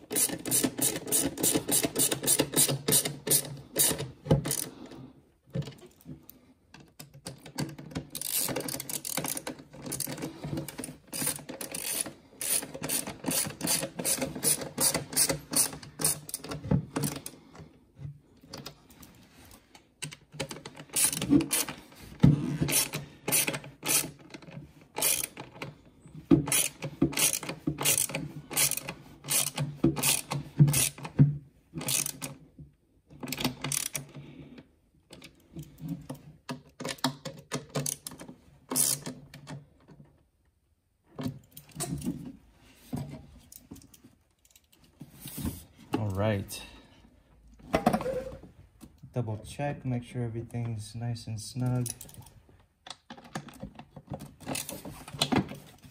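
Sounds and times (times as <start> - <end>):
hand ratchet clicking: 0.0 - 4.7, 7.3 - 17.4, 20.1 - 21.7, 22.5 - 25.7, 26.4 - 31.1, 31.8 - 32.4, 33.3 - 34.2, 37.7 - 39.2.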